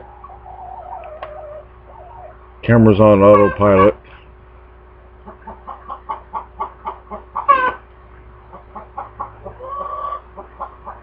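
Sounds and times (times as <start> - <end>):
chicken drawn-out call: 0.0 - 2.5, 3.2 - 4.0, 5.2 - 7.9, 8.5 - 11.0
chicken squawk: 0.0 - 2.5, 3.2 - 4.0, 5.2 - 7.9, 8.5 - 11.0
chickens clucking: 0.0 - 4.3, 5.0 - 11.0.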